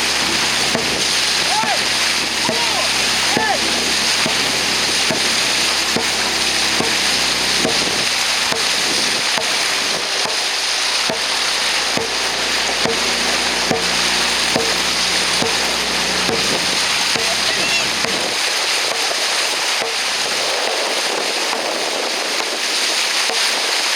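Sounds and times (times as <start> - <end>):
water rushing along hull: 0.0 - 23.9.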